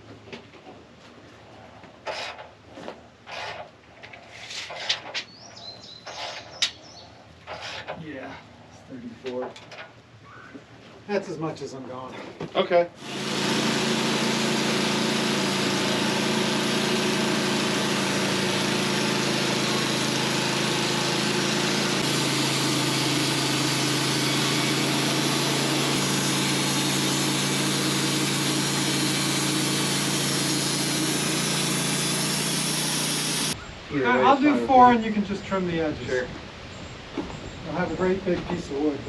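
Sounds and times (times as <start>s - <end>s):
saw blade cutting log: 2.0s - 2.5s, 3.2s - 3.7s, 6.0s - 6.8s, 7.5s - 8.0s, 13.0s - 33.6s
sawmill engine running: 13.0s - 33.6s.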